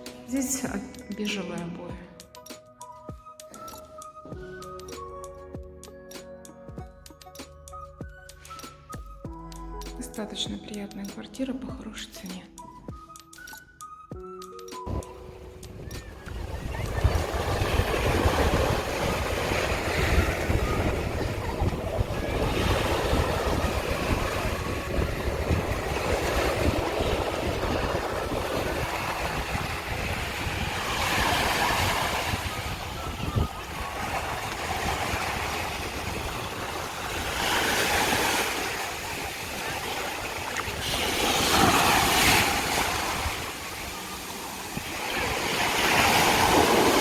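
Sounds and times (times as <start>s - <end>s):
wind rumbling on microphone: 14.9s - 47.0s.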